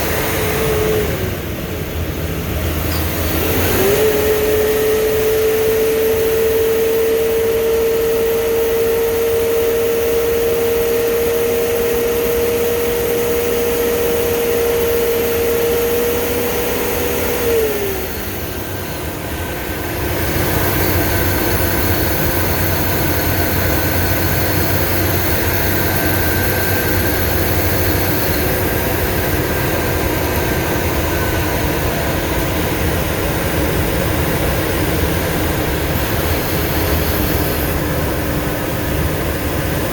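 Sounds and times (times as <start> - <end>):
bus engine drone: 0.0 - 39.9
whine gliding down in pitch: 2.8 - 11.3.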